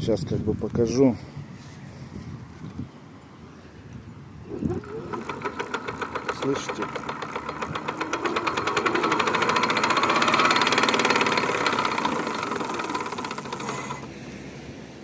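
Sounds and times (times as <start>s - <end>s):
electric bike motor knocking: 4.7s - 14.1s.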